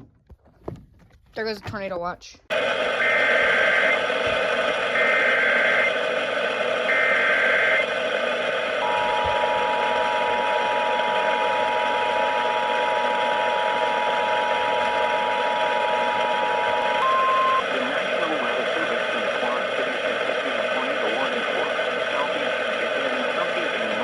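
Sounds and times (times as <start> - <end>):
radio hiss: 2.5 - 24.0
screeching digital header bursts: 2.8 - 4.1, 4.7 - 6.0, 6.6 - 8.0, 16.1 - 18.0
two-tone attention signal: 3.0 - 4.0, 4.9 - 5.9, 6.9 - 7.8, 8.8 - 11.9, 16.3 - 17.7.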